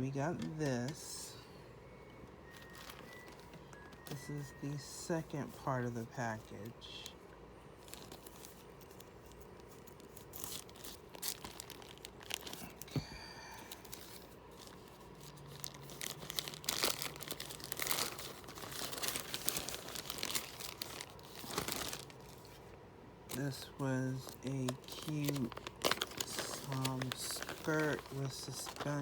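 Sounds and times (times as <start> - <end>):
packaging crinkling and tearing: 2.4 - 5.3, 7.7 - 13.0, 13.6 - 22.7, 23.3 - 29.0.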